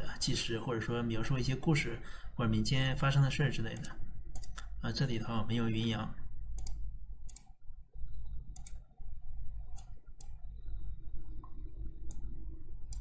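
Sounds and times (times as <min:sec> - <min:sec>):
low electrical hum: 0:00.0 - 0:13.0
computer mouse clicks: 0:03.7 - 0:04.8, 0:06.6 - 0:07.6, 0:08.2 - 0:08.9, 0:09.7 - 0:10.8, 0:11.4 - 0:13.0.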